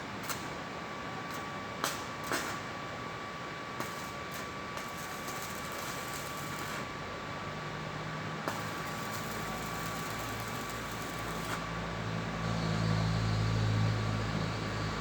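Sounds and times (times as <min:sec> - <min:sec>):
welding machine hum: 0:00.1 - 0:13.6
arc welding hiss: 0:01.3 - 0:02.7, 0:03.8 - 0:07.0, 0:08.4 - 0:11.7.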